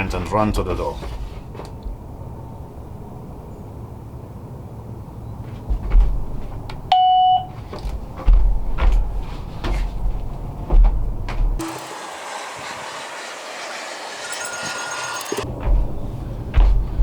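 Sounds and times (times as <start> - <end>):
short electronic beep: 6.9 - 7.5.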